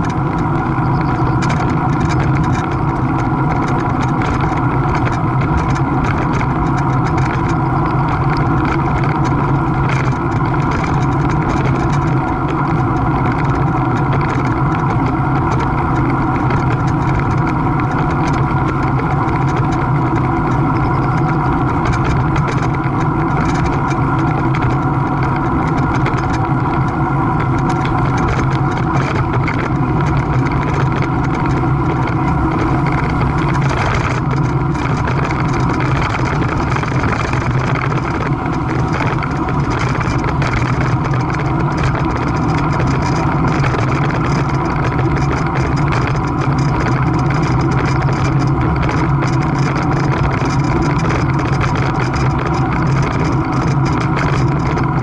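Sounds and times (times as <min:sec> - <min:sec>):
mechanical drone: 0:00.0 - 0:55.0.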